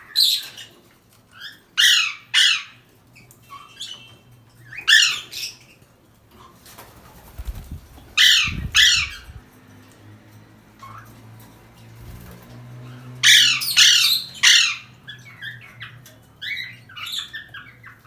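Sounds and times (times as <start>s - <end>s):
parrot squawking: 1.4s - 2.8s, 4.7s - 5.6s, 8.1s - 9.4s, 13.0s - 18.0s.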